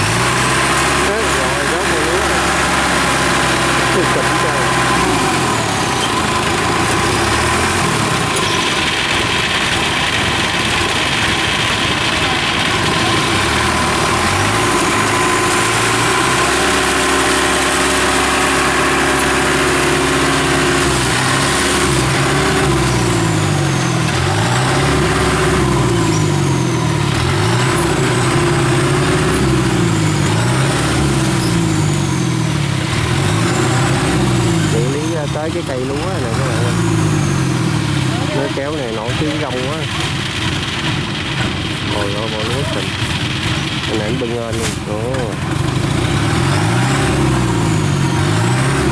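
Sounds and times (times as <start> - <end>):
diesel engine running under load: 0.0 - 48.9.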